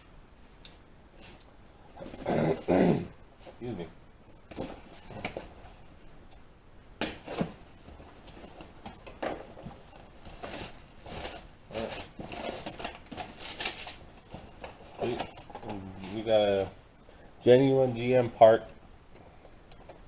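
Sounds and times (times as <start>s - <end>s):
packaging rustling and clicking: 7.1s - 16.2s.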